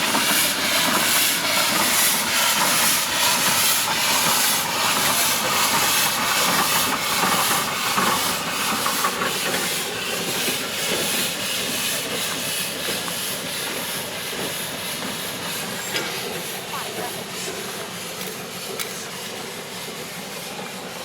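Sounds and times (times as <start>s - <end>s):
steam hissing from locomotive: 0.0s - 21.0s.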